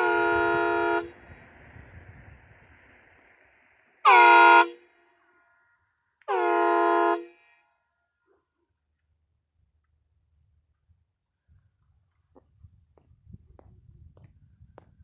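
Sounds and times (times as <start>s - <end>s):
air horn blasts: 0.0s - 1.5s, 4.0s - 5.2s, 6.2s - 7.8s.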